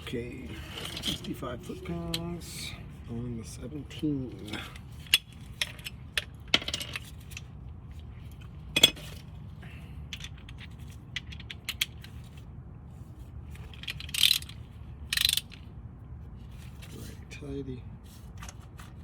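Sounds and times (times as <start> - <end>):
wrench ratcheting: 13.7 - 15.7.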